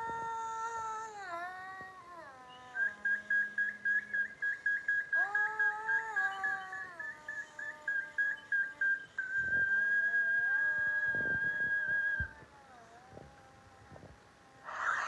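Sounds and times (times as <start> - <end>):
high chirping whistle: 2.6 - 12.3, 14.7 - 15.0
lower sliding tones: 14.6 - 15.0.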